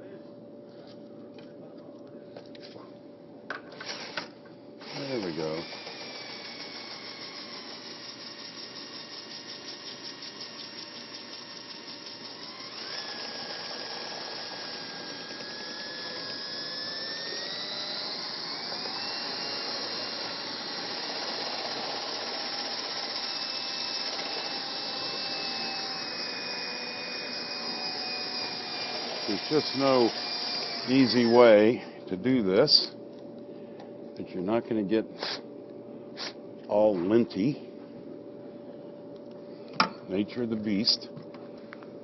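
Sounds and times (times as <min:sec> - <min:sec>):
electric drill whining: 0:03.7 - 0:31.9.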